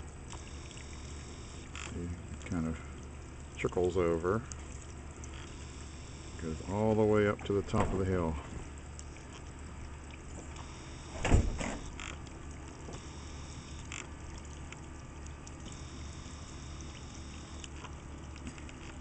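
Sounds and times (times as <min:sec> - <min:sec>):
water trickling over stones: 0:00.0 - 0:19.0
muffled thump: 0:11.2 - 0:11.8.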